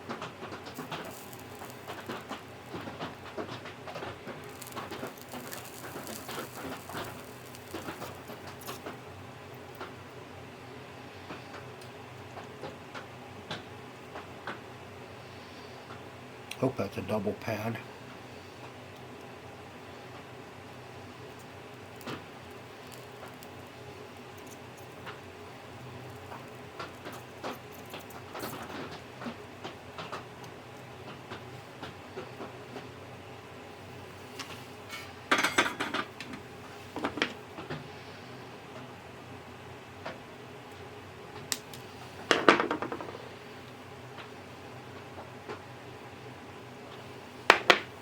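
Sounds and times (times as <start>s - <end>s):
low background hum: 0.0s - 48.0s
hand tools clicking and scratching: 0.7s - 3.2s, 4.2s - 8.9s.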